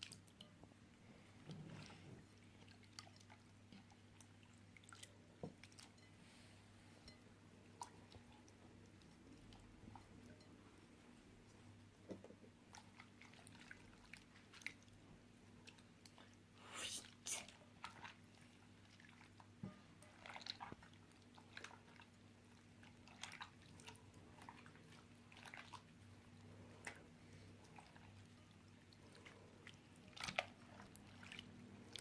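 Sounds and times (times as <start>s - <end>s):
slime squelching: 27.6s - 32.0s.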